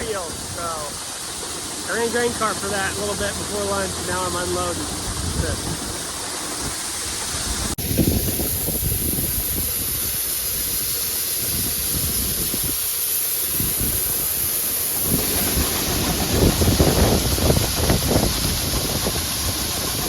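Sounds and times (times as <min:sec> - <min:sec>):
harvest machinery hissing: 0:00.0 - 0:20.0
wind buffeting microphone: 0:04.2 - 0:12.9, 0:13.5 - 0:20.0.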